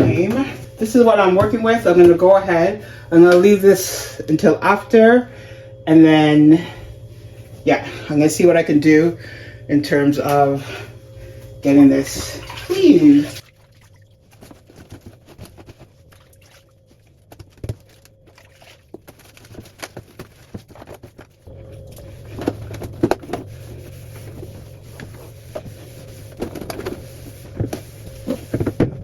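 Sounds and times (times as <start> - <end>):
steady low hum: 0.0 - 29.0
clicks and knocks of items handled: 18.9 - 21.4.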